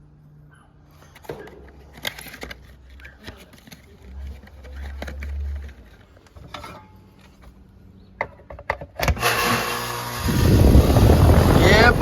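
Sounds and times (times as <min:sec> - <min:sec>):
condenser fan rushing: 0:09.0 - 0:12.0
condenser unit humming: 0:09.0 - 0:12.0.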